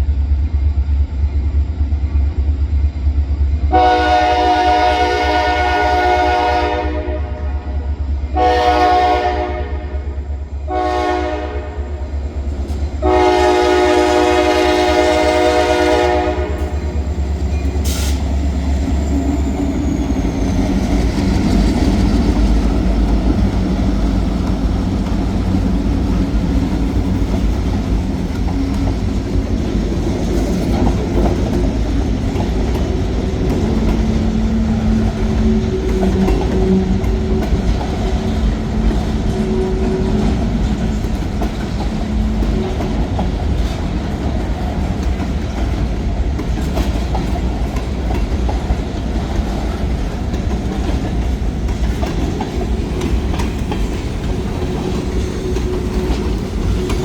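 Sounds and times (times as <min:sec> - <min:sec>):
train rumbling past on rails: 0:00.0 - 0:57.0
locomotive horn blasts: 0:03.7 - 0:10.1, 0:10.7 - 0:12.0, 0:13.0 - 0:16.9.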